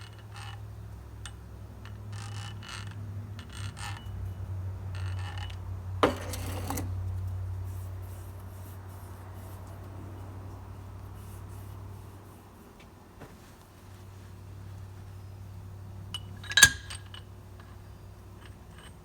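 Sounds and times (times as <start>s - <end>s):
metal parts scraping: 5.0s - 7.0s.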